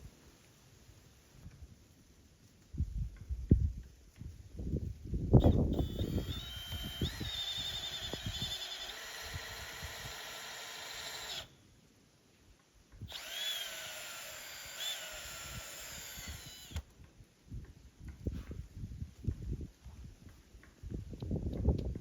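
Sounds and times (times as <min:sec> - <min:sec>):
small electric motor whining: 0:05.4 - 0:11.6, 0:13.0 - 0:16.9.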